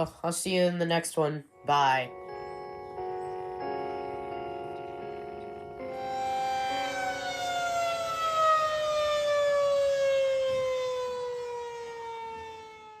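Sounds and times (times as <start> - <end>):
warning siren winding down: 5.8 - 13.0.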